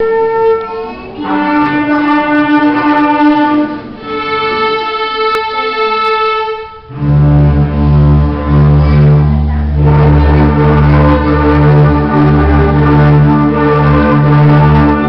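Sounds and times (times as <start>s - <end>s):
orchestra strings slow melody: 0.0s - 15.0s
loud low bass line: 6.9s - 15.0s.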